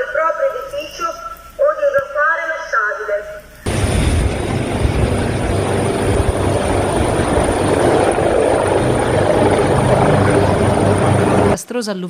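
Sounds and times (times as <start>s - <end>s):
helicopter running: 3.6s - 11.6s.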